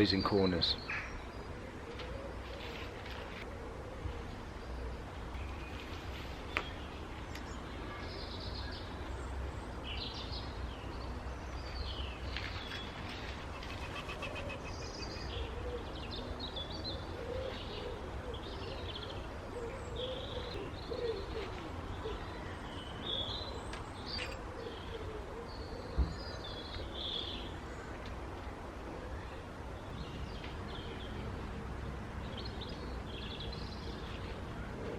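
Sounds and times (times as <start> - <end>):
small birds chirping: 4.3 - 28.0
pigeon-like cooing: 13.5 - 22.3, 24.4 - 26.1.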